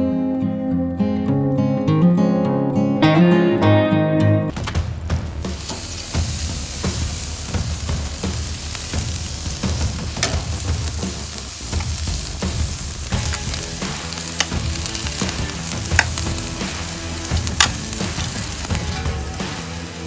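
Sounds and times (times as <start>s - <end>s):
steaks sizzling on a grill: 4.5s - 20.0s
sharp fat pops: 9.7s - 18.5s.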